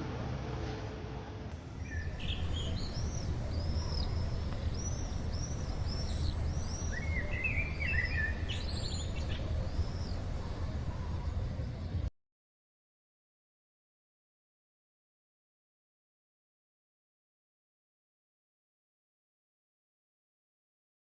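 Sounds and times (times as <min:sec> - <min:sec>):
low rumble of outdoor noise: 0:00.0 - 0:12.1
small birds chirping: 0:01.6 - 0:12.1.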